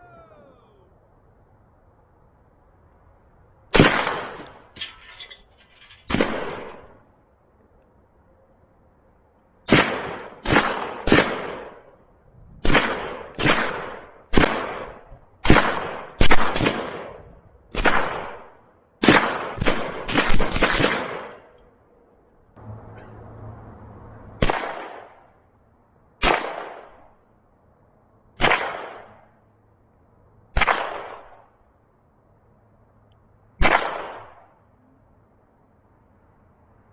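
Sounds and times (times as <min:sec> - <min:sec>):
echoing gunshots: 0:03.7 - 0:04.7, 0:06.1 - 0:07.0, 0:09.7 - 0:11.9, 0:12.6 - 0:21.6, 0:24.4 - 0:25.4, 0:26.2 - 0:27.2, 0:28.4 - 0:29.4, 0:30.6 - 0:31.6, 0:33.6 - 0:34.5.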